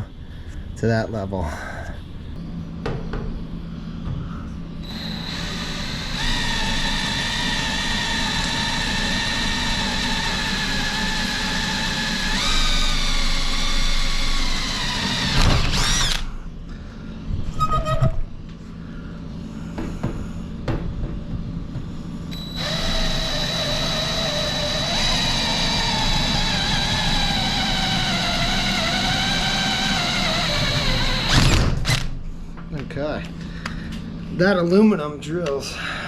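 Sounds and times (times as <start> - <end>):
drill clicks: 4.8 - 16.3, 22.3 - 32.1
power drill whining: 4.8 - 16.3, 22.3 - 32.1.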